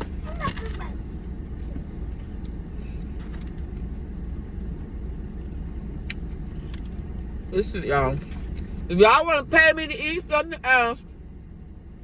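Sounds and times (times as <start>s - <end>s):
steady low rumble: 0.0s - 12.0s.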